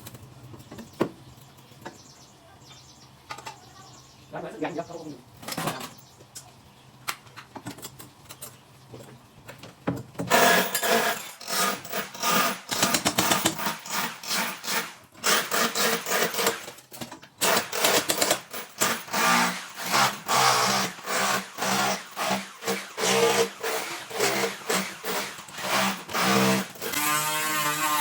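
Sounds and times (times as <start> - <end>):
tool rasping wood: 17.4 - 28.0.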